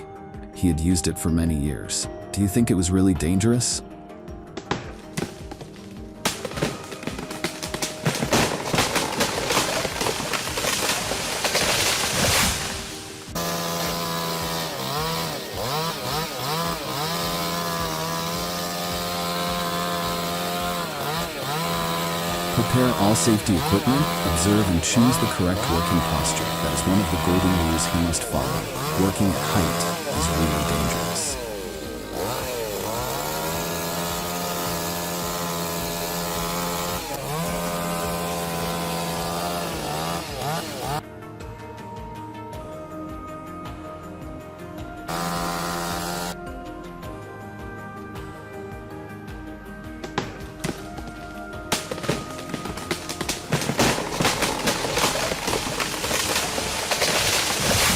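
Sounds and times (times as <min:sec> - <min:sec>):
chainsaw cutting wood: 0:04.5 - 0:41.0, 0:45.0 - 0:46.4, 0:49.7 - 0:57.9.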